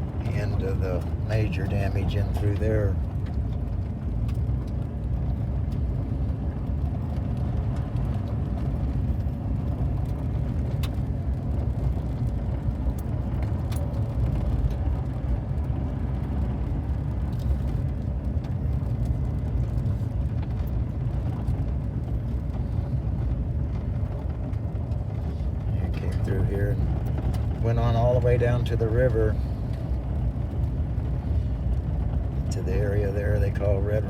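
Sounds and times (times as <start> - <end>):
car driving rumble: 0.0 - 34.0.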